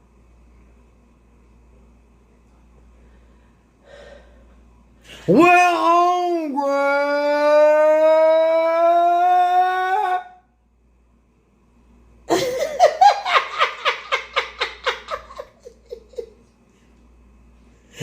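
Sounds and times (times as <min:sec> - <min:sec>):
person shouting a long note: 0:05.3 - 0:10.4
hearty laughter: 0:12.3 - 0:16.5.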